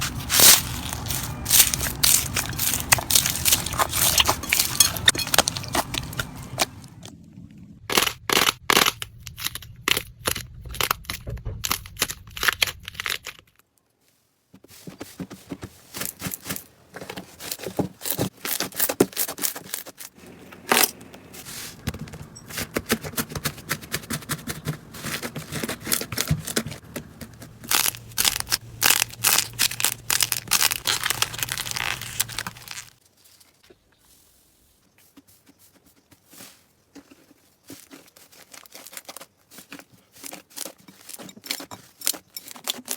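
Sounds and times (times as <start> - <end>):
slime crackling and popping: 0.0 - 6.8, 27.3 - 33.0.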